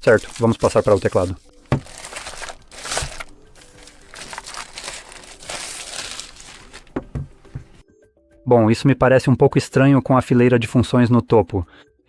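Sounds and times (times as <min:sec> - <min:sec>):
plastic packaging crinkling: 0:00.0 - 0:07.3.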